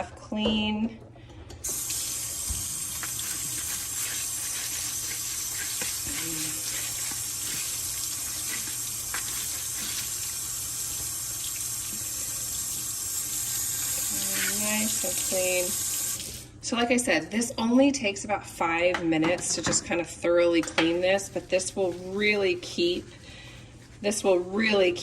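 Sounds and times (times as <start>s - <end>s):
water running from a tap: 1.6s - 16.5s.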